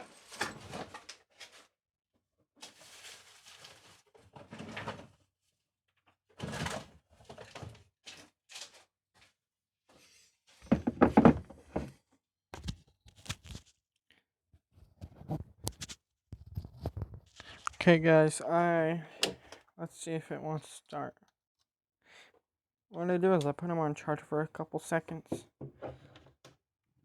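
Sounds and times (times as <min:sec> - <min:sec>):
knocks and clattering handling: 0:10.7 - 0:11.9.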